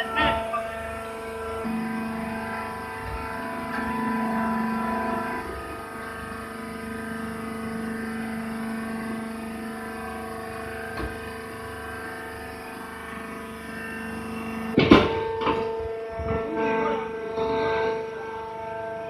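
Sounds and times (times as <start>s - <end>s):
machine hum: 0.0s - 19.0s
loud clanking knock: 14.8s - 16.4s.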